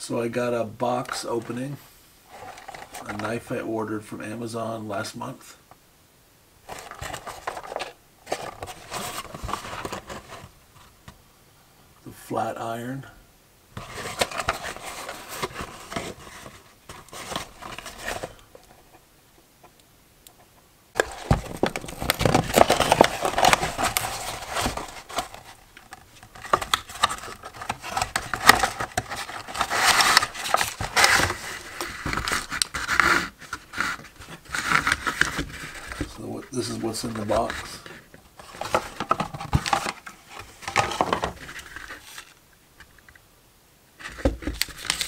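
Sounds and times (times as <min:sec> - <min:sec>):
cardboard packaging crinkling: 0:06.6 - 0:10.5, 0:13.8 - 0:18.8, 0:21.0 - 0:42.4, 0:44.0 - 0:45.0.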